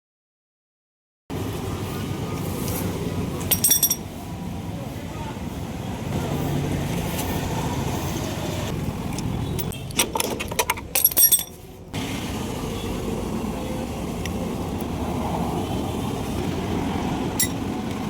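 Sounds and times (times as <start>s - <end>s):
metallic clinking and jingling: 3.4s - 4.1s, 10.5s - 11.6s, 17.4s - 17.6s
vehicle engine running: 11.9s - 18.0s.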